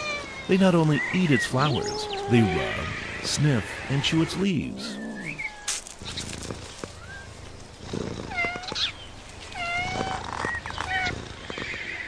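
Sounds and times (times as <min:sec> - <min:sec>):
cat meowing: 0:01.4 - 0:03.3.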